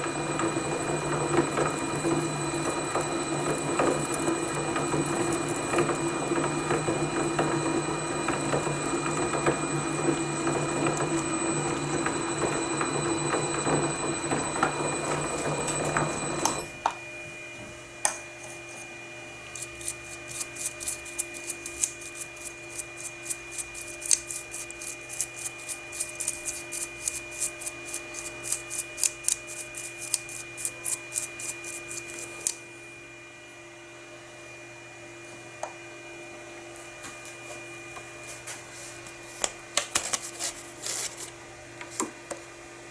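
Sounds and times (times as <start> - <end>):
lathe whining: 0.0 - 16.7
faint hum: 0.0 - 16.8.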